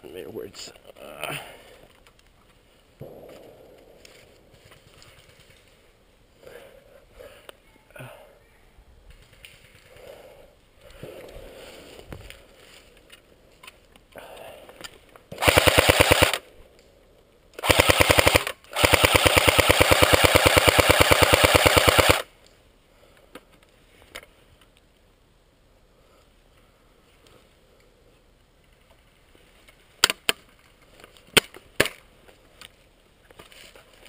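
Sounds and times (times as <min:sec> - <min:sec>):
airsoft gun automatic bursts: 0:15.3 - 0:16.4, 0:17.6 - 0:22.3.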